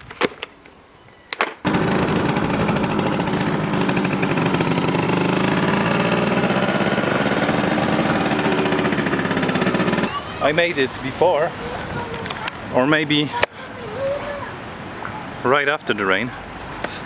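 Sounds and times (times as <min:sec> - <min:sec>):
motorbike engine running: 0:01.7 - 0:10.1.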